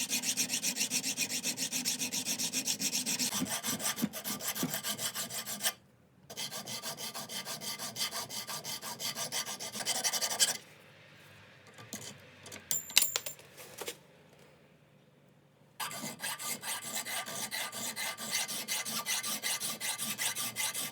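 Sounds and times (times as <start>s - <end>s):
metal ringing clink: 12.7s - 13.4s.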